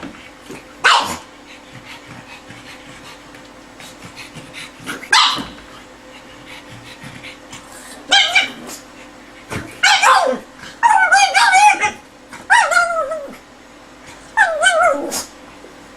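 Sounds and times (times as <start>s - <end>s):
dog barking: 0.8s - 1.3s, 5.1s - 5.6s, 8.1s - 8.6s, 9.8s - 13.3s.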